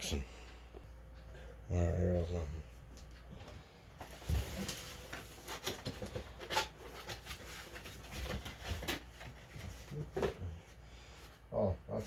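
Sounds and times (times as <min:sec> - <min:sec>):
cardboard packaging rustling: 0:04.0 - 0:10.6.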